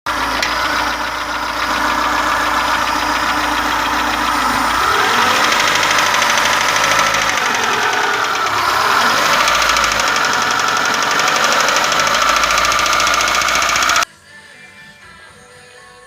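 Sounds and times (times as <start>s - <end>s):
car engine with rapid knocking: 0.0s - 14.0s.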